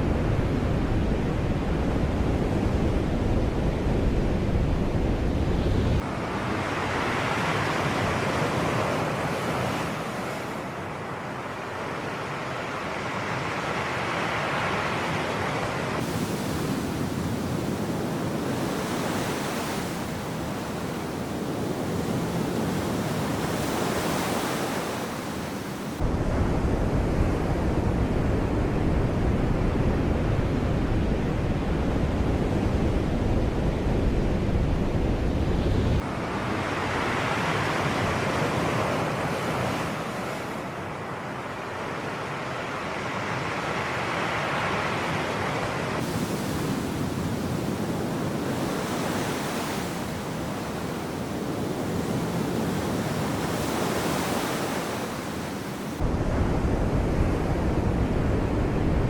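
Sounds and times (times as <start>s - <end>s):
wind rumble on microphone: 0.0s - 10.7s, 15.1s - 41.0s, 44.6s - 59.0s
sea surf washing ashore: 5.6s - 27.6s, 36.0s - 59.0s.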